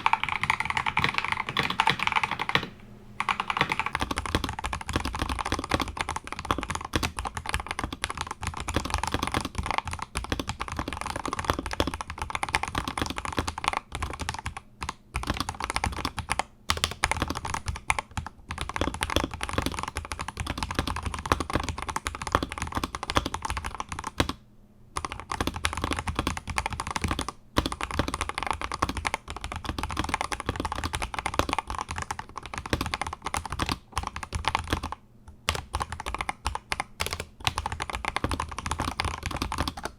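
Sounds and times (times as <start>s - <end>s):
fast mechanical keyboard typing: 0.0s - 24.4s, 25.0s - 39.9s.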